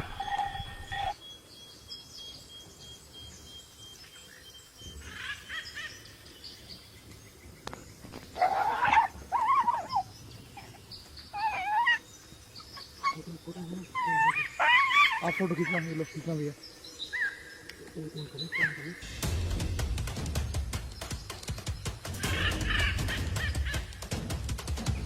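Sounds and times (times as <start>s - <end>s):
animal whining cries: 8.4s - 10.7s, 11.3s - 12.0s, 13.9s - 16.0s.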